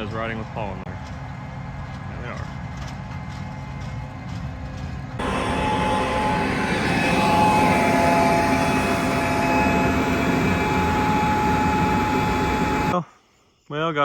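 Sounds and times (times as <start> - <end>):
combine harvester engine rumble: 0.0 - 13.0
machinery whining tones: 5.2 - 13.0.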